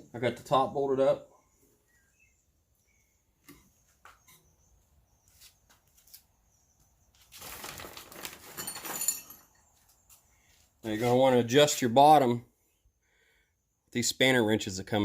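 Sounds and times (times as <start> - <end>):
rustling handling noise: 7.2 - 11.3.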